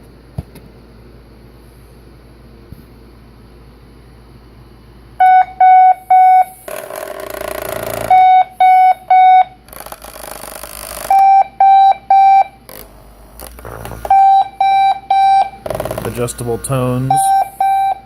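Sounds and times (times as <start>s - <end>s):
alarm clock electronic beeps: 5.2s - 6.6s, 7.8s - 9.6s, 11.1s - 12.6s, 14.1s - 18.0s.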